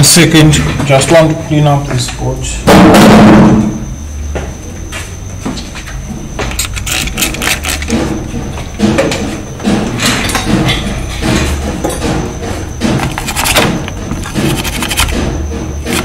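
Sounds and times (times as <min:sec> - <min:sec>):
brush scrubbing circuit board: 0:13.0 - 0:15.2.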